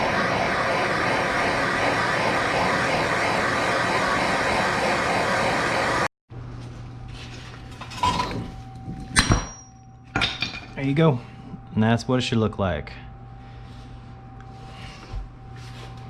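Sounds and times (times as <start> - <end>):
loud rushing noise: 0.0 - 6.1.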